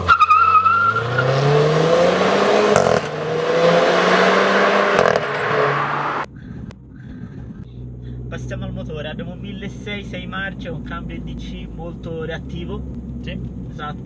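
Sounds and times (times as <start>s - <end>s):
tyre squeal: 0.0s - 1.5s
gear upshifts: 0.0s - 6.3s
car engine accelerating: 0.0s - 13.9s.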